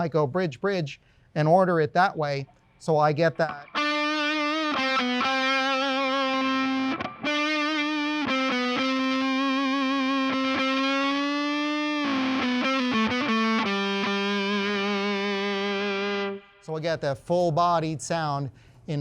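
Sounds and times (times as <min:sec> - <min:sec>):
overdriven electric guitar lead: 0:03.4 - 0:16.7.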